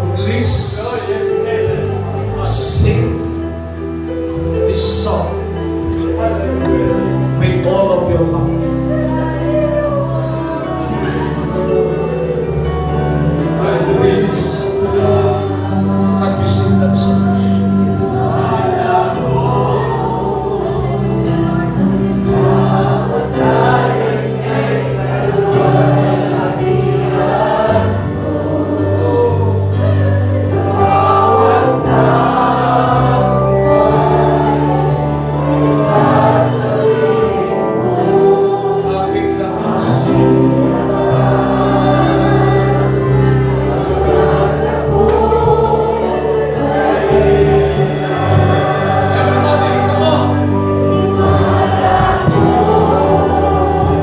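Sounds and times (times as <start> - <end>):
group singing worship song: 0.0 - 54.0
held bass chords: 0.0 - 54.0.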